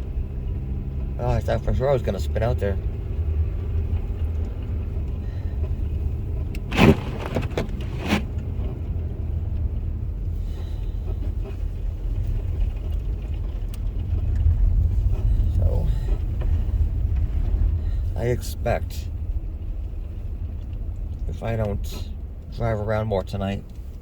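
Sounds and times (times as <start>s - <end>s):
car driving over snow: 6.4s - 9.0s.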